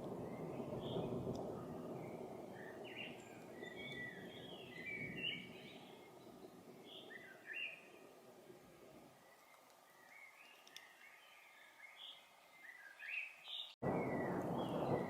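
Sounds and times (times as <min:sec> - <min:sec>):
distant thunder rumble: 0:00.0 - 0:09.1, 0:13.8 - 0:15.0
songbirds chirping and whistling: 0:00.0 - 0:15.0.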